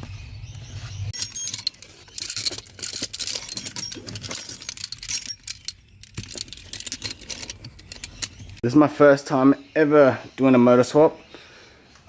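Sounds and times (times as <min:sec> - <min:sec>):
small metal pieces jingling: 0:01.1 - 0:08.6.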